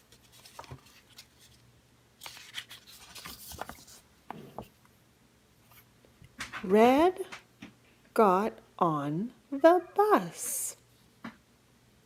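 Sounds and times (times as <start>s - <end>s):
paper rustling: 0.0s - 1.6s, 2.2s - 4.7s
page turning: 0.1s - 1.6s, 2.2s - 4.7s.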